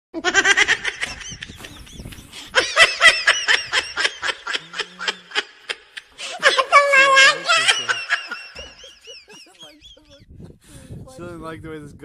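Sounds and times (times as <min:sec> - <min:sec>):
person laughing high-pitched: 0:00.2 - 0:10.2.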